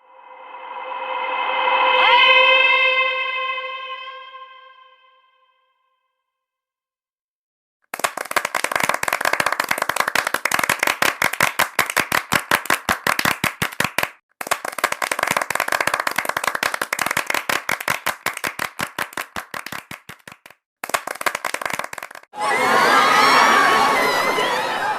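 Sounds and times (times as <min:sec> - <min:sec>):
rapid sharp cracks: 0:08.0 - 0:22.3.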